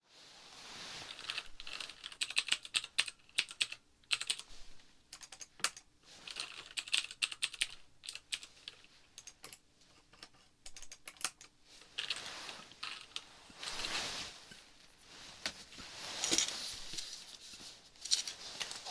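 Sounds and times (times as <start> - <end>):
soft rustling: 0.1 - 1.8, 11.6 - 18.9.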